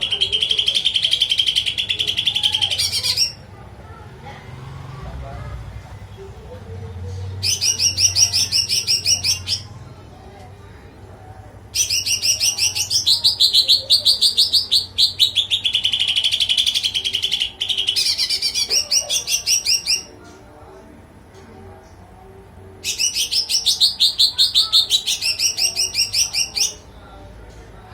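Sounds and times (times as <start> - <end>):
songbird chirping and trilling: 0.0 - 3.6, 7.3 - 10.0, 11.7 - 20.3, 22.8 - 27.0.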